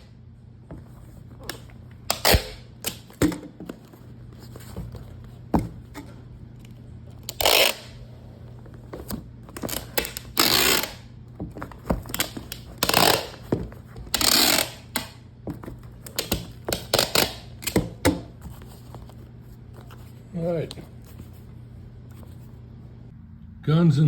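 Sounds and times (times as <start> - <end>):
steady low hum: 0.0 - 24.0
rustling and scraping handling: 0.6 - 2.1, 3.0 - 7.4, 8.0 - 10.6, 18.2 - 23.0.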